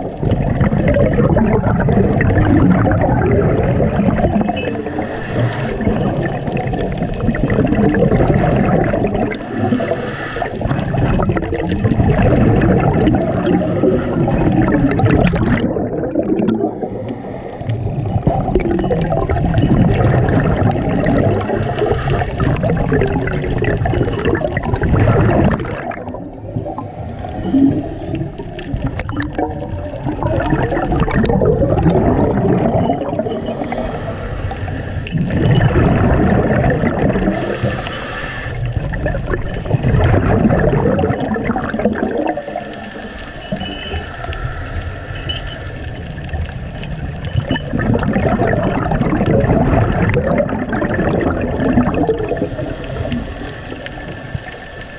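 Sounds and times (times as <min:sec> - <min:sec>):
exhaled bubbles rumbling: 0:00.0 - 0:54.9
regulator hiss on inhalation: 0:04.8 - 0:05.9, 0:09.4 - 0:10.7, 0:13.4 - 0:14.5, 0:16.7 - 0:18.6, 0:21.6 - 0:22.5, 0:33.3 - 0:35.3, 0:37.3 - 0:38.9, 0:42.1 - 0:46.2, 0:52.2 - 0:54.9.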